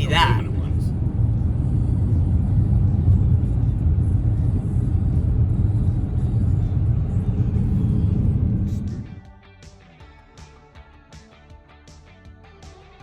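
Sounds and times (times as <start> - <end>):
road and engine noise in car: 0.0 - 9.2.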